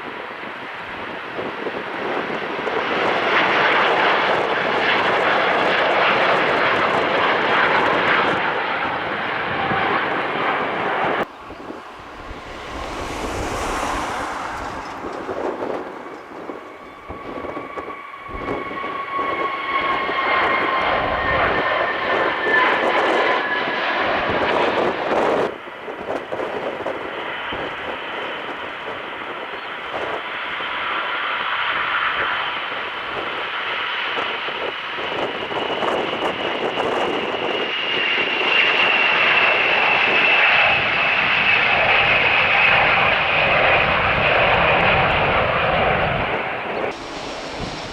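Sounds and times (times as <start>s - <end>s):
jet engines whining: 1.0s - 24.9s, 36.1s - 47.9s.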